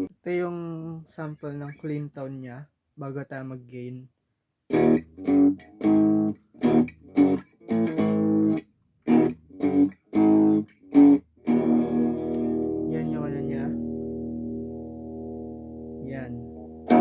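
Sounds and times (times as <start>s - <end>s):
clean electric guitar chords: 4.8s - 17.0s.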